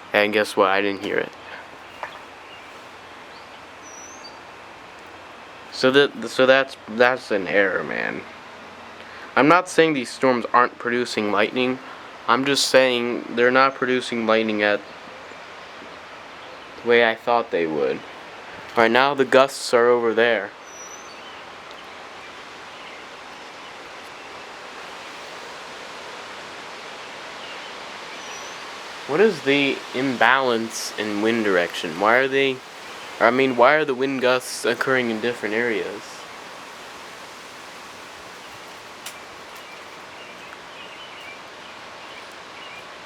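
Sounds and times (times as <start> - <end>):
wind rustling through trees: 0.0 - 43.0
gusty storm wind: 23.9 - 40.2.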